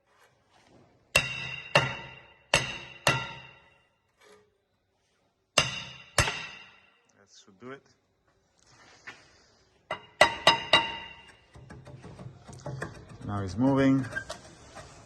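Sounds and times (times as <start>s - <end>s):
hammer striking metal brake disc: 1.1s - 3.8s, 5.6s - 6.9s, 9.9s - 11.6s.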